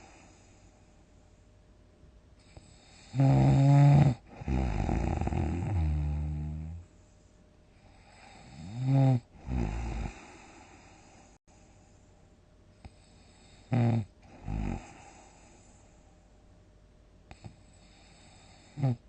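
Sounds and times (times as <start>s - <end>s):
loud snoring: 2.5s - 6.8s, 8.0s - 10.7s, 13.2s - 15.2s, 17.3s - 19.0s.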